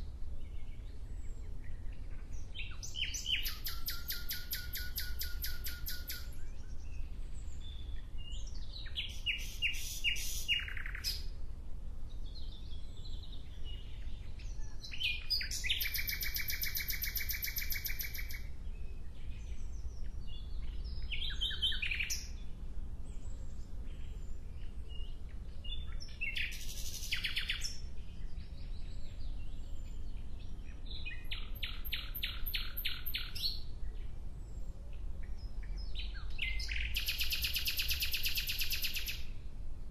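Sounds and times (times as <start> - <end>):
songbird trilling: 2.5 - 11.3, 13.1 - 18.5, 20.3 - 22.3, 25.7 - 27.8, 30.9 - 33.6, 35.6 - 39.3.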